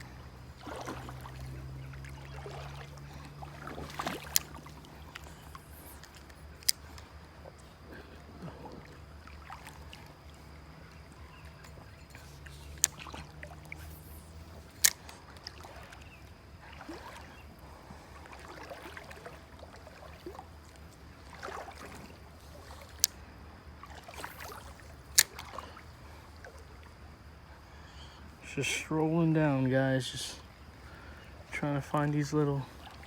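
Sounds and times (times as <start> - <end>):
faint trickle of running water: 0.0 - 23.0
footsteps in shallow rocky creek: 0.0 - 27.1
sharp clicks: 4.0 - 7.1, 11.5 - 15.6.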